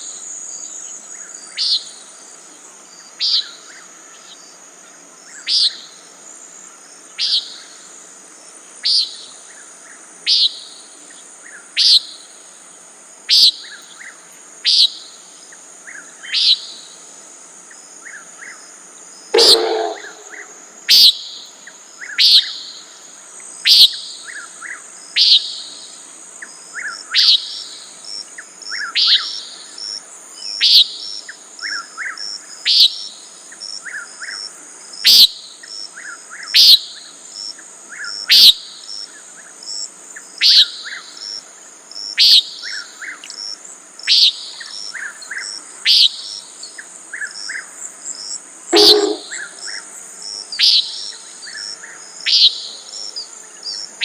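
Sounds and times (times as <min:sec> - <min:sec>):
high insect drone: 0:00.0 - 0:54.0
buzzy bird peent call: 0:19.4 - 0:20.6, 0:48.7 - 0:49.6.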